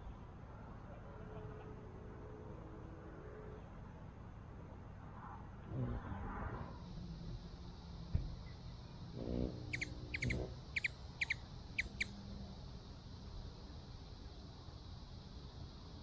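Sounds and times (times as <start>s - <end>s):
lower short bird calls: 9.2s - 12.1s
small bird chipping: 9.4s - 12.2s.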